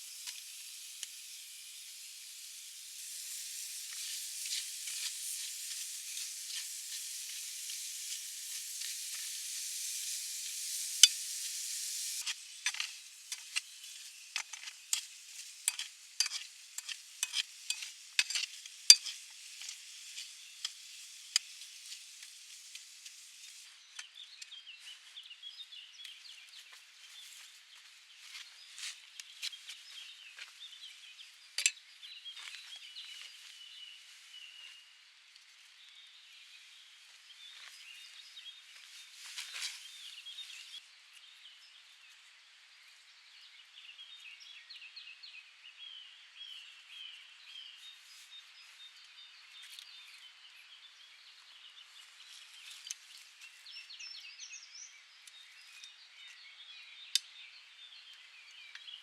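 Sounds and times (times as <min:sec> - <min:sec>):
food sizzling in a pan: 0:00.0 - 0:24.2
sharp pops and crackles: 0:10.4 - 0:11.5, 0:12.2 - 0:24.5.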